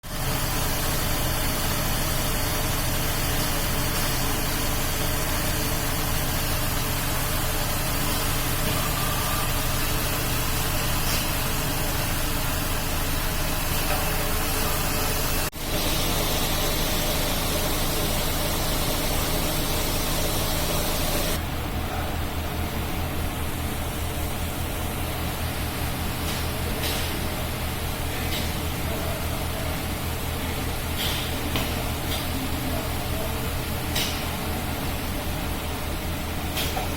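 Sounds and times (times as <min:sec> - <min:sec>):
grinding machinery hiss: 0:00.1 - 0:21.4
low machine hum: 0:00.1 - 0:36.9.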